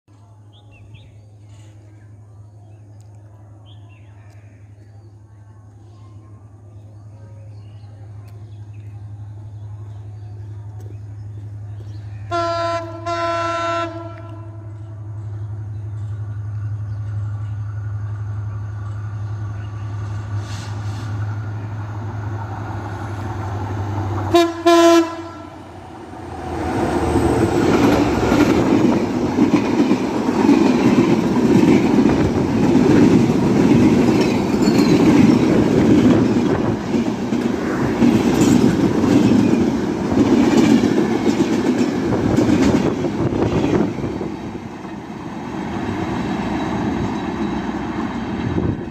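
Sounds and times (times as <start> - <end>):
train rushing past: 8.0 - 48.9
train horn blast: 12.3 - 14.9, 24.3 - 25.7
wheels clattering over rail joints: 27.6 - 48.9.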